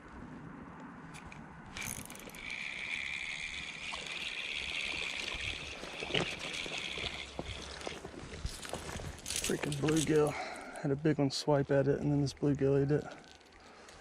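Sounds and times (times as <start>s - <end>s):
spinning reel whirring: 1.8s - 8.0s.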